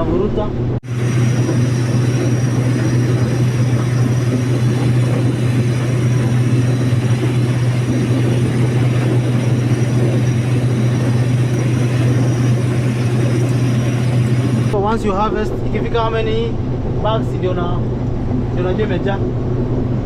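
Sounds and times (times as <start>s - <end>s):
combine harvester engine drone: 0.8s - 14.9s.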